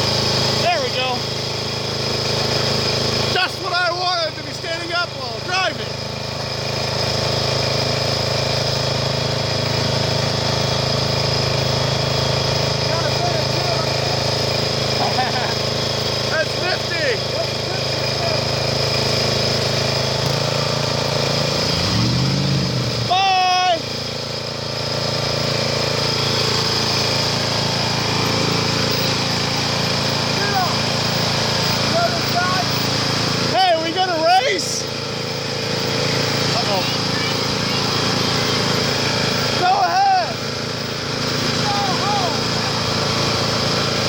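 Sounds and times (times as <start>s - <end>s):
lawn mower engine running: 0.0s - 44.0s.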